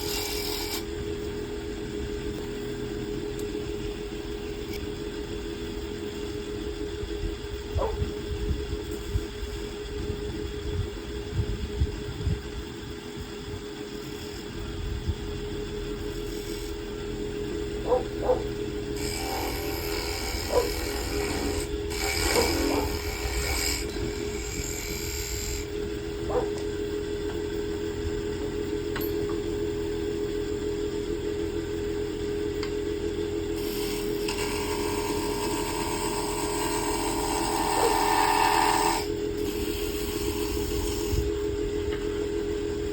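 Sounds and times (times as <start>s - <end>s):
turning tool scraping wood: 0.0s - 0.8s, 19.0s - 25.7s, 33.6s - 41.3s
wood lathe humming: 0.0s - 6.8s, 13.8s - 29.0s, 29.8s - 42.8s.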